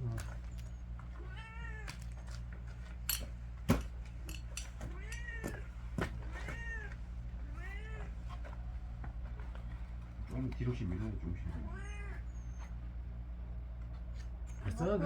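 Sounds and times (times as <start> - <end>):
steady low hum: 0.0 - 15.0
cat meowing: 1.1 - 2.3, 4.8 - 8.3, 11.5 - 12.7.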